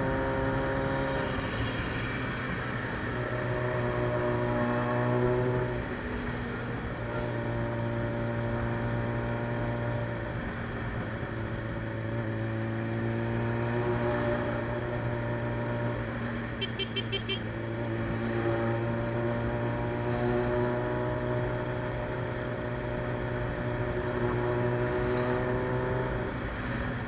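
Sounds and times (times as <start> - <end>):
motorcycle engine running: 16.0 - 18.2.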